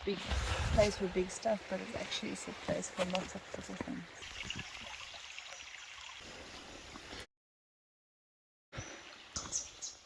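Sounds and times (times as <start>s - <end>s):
forest stream rushing: 0.0s - 7.2s.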